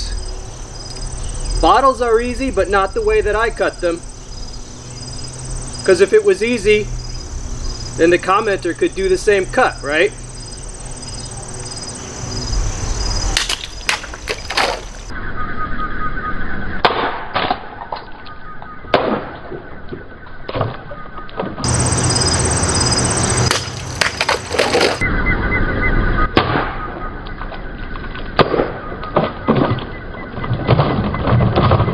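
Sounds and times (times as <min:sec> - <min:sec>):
insects chirping: 0:00.0 - 0:16.8, 0:21.6 - 0:26.3
knife slashing plastic bottles: 0:13.4 - 0:15.0, 0:23.5 - 0:25.0.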